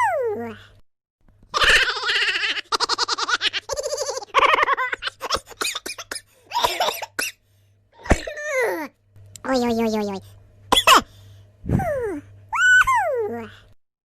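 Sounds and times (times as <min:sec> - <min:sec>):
person laughing: 0:01.5 - 0:05.6.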